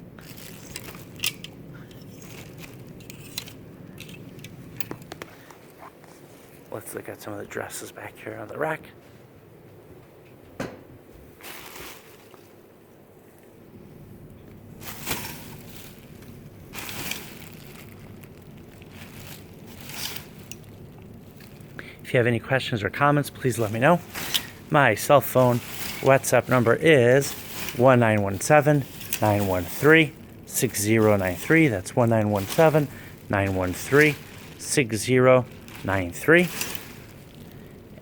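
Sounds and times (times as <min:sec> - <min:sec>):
clothes hangers rustling and clicking: 0:00.2 - 0:06.2, 0:14.8 - 0:21.8, 0:23.3 - 0:38.0.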